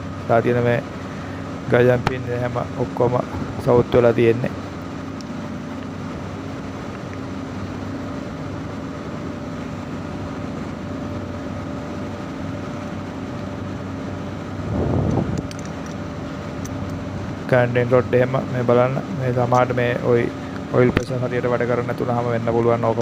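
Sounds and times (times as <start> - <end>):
machinery humming: 0.0 - 23.0.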